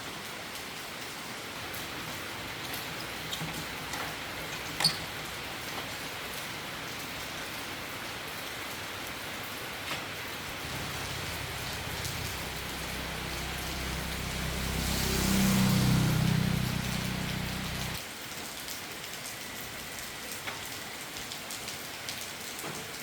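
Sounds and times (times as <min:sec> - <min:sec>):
rain falling on a surface: 0:00.0 - 0:23.0
low droning hum: 0:10.6 - 0:18.0.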